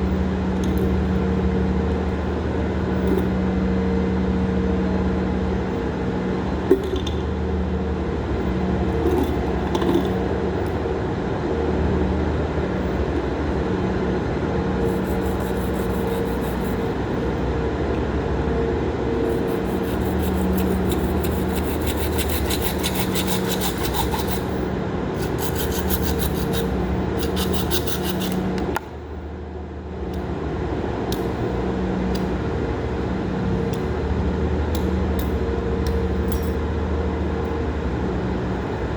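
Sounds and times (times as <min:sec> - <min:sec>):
low machine hum: 0:00.0 - 0:38.9
tool rasping on a workpiece: 0:14.9 - 0:16.8, 0:19.3 - 0:28.4.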